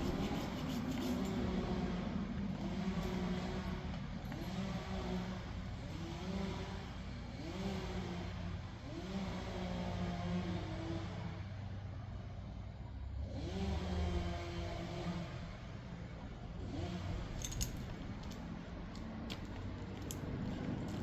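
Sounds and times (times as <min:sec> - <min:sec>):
engine revving: 0:02.6 - 0:11.4, 0:13.1 - 0:15.6, 0:16.5 - 0:18.4.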